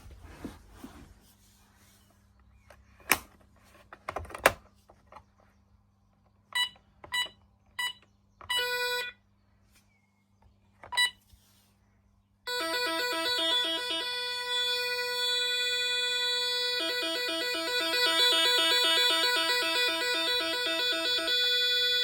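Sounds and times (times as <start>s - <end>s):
alarm keypad beeps: 12.5s - 22.0s
warbling alarm tone: 12.5s - 22.0s.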